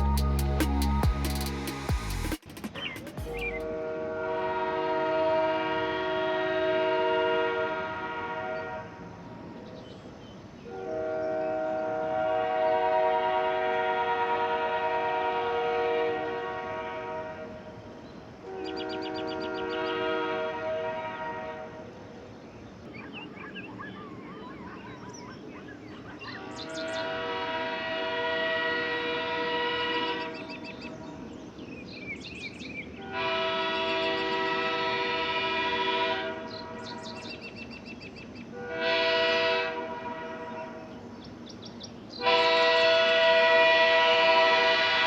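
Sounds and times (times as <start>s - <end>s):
train horn chord blasts: 3.5s - 9.1s, 10.7s - 17.7s, 18.4s - 21.8s, 26.4s - 30.6s, 33.0s - 37.2s, 38.5s - 40.9s, 42.2s - 45.0s.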